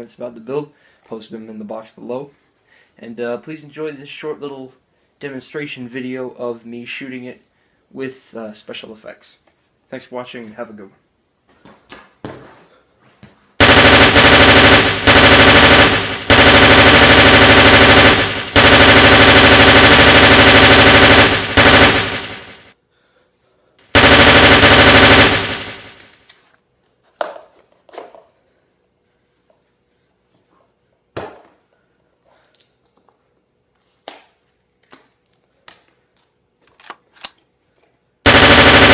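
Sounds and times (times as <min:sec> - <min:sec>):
machine-gun fire: 0:13.6 - 0:22.7, 0:23.9 - 0:26.2, 0:38.2 - 0:38.9.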